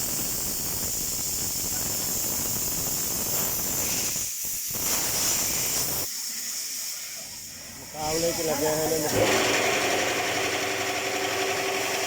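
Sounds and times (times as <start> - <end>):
compressed air hissing: 0.0 - 9.4.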